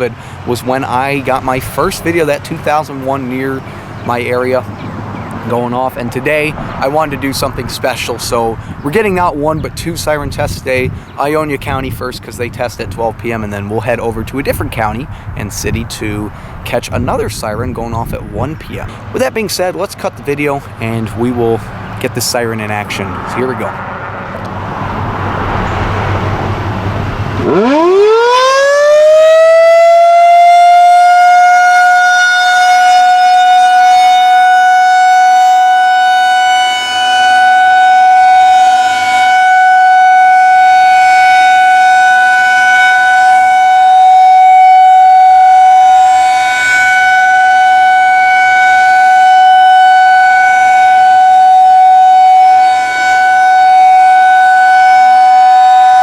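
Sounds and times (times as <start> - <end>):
tornado siren wailing: 0.0 - 10.7, 23.2 - 56.0.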